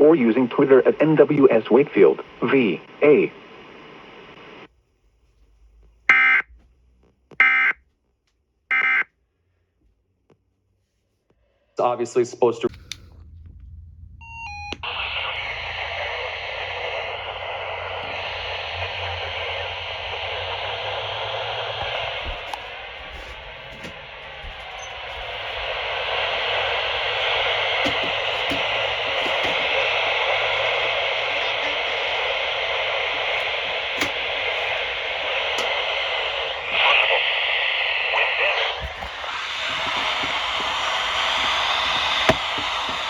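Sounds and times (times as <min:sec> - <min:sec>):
radio static hiss: 0:00.0 - 0:04.7, 0:15.0 - 0:43.0.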